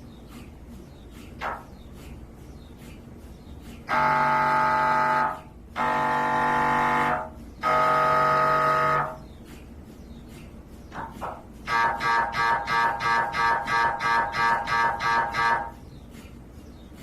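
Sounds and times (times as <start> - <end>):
mri scanner buzzing: 3.9 - 9.2.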